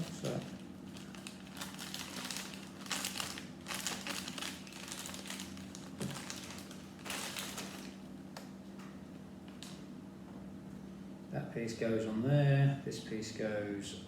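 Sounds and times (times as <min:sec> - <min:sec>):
plastic rustling and crinkling: 0:00.0 - 0:08.5, 0:09.5 - 0:09.9.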